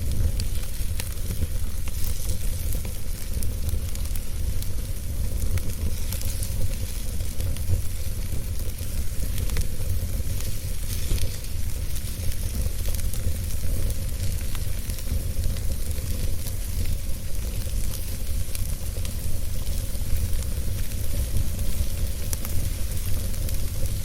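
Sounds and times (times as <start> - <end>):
fire crackles: 0.0 - 24.0
wood fire burning: 0.0 - 24.0.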